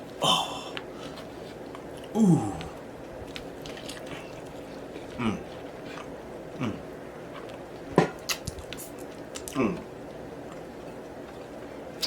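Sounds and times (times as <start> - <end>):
person chewing: 0.5 - 12.0
person humming mm: 2.1 - 2.8, 5.2 - 5.6, 6.6 - 6.9, 9.5 - 9.9.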